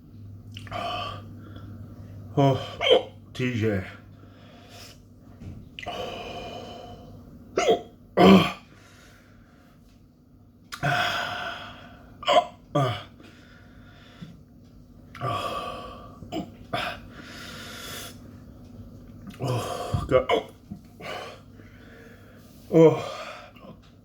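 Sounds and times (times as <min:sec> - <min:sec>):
man hiccuping: 0:02.4 - 0:03.2, 0:07.6 - 0:08.6, 0:12.2 - 0:13.1, 0:19.4 - 0:20.6.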